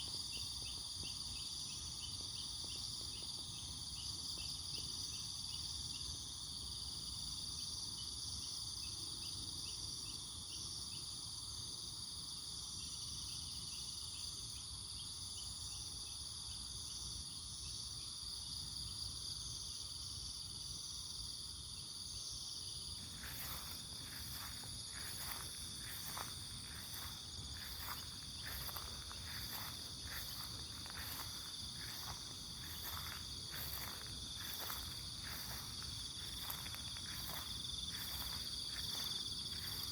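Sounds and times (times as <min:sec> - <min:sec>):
crickets trilling: 0:00.0 - 0:39.9
pulsing insect call: 0:22.5 - 0:39.9.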